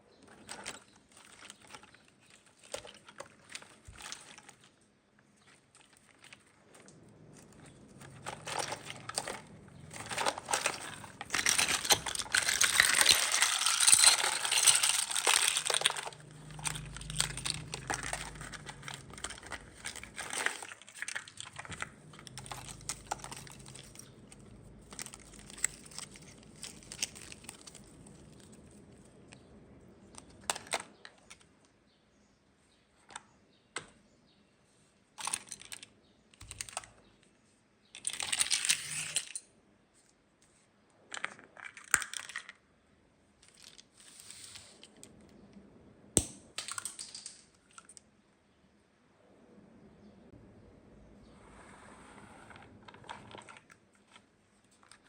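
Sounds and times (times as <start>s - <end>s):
plastic packaging crinkling: 0.3s - 29.1s.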